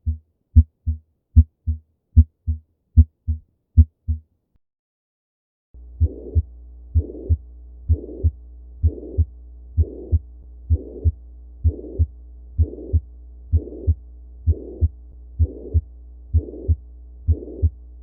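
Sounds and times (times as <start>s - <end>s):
heartbeat with murmur: 0.0s - 4.2s, 6.0s - 17.8s
steady low hum: 5.8s - 18.0s.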